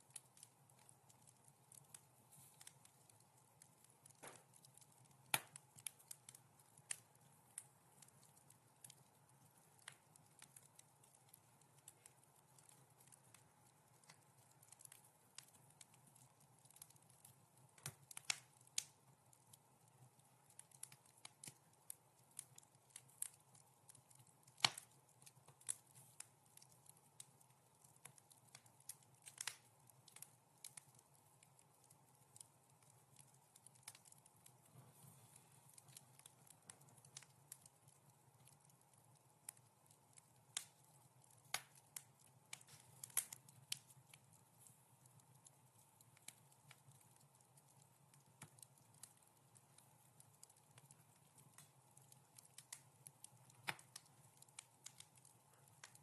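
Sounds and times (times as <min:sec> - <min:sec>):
faint steady hum: 0:00.0 - 0:56.0
wood fire crackling and popping: 0:00.0 - 0:56.0.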